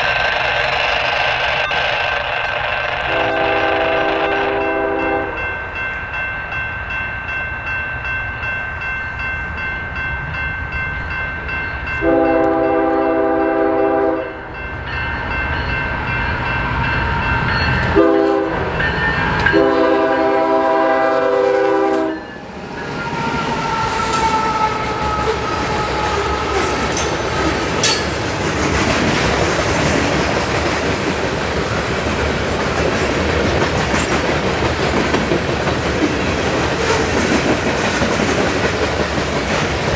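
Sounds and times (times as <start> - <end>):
train wheels rumbling and clicking: 0.0 - 6.2, 14.7 - 20.8, 21.4 - 39.9
locomotive air horn blasts: 3.0 - 5.4, 12.0 - 14.5, 17.9 - 18.7, 19.5 - 22.2, 23.0 - 27.9
high wheel squeal: 22.8 - 28.2.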